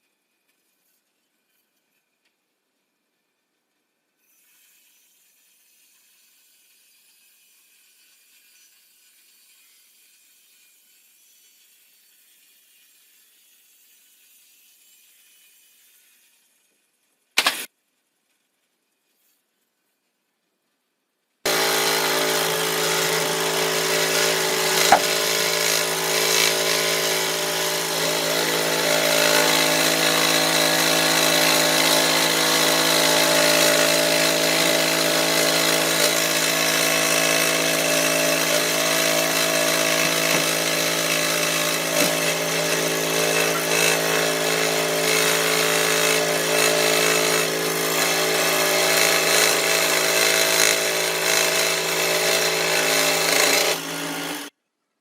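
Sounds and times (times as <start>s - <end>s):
power tool motor working wood: 21.5s - 54.5s.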